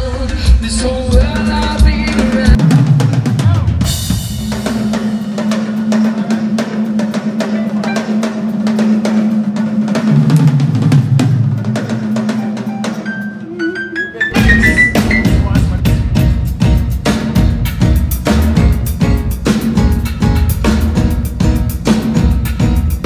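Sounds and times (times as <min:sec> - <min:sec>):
live reggae band playing: 0:00.0 - 0:23.0
rising high notes: 0:12.3 - 0:16.3
snare and bass drum: 0:14.3 - 0:23.0.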